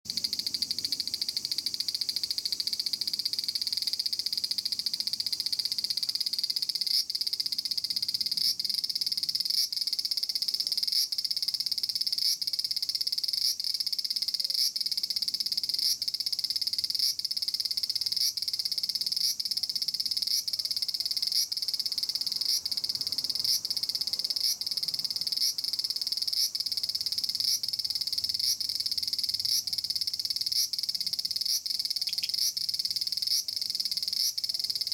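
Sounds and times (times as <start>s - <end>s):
cicada buzzing: 0.1s - 34.9s.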